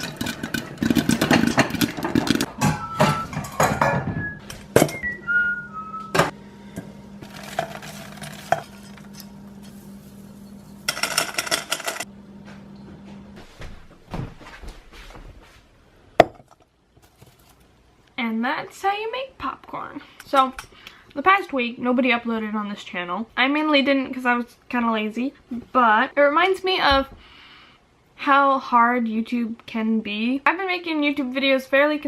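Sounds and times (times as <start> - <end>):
pots and pans clattering: 0.0 - 5.0, 7.2 - 9.2, 10.9 - 12.0
steady low hum: 4.4 - 14.0.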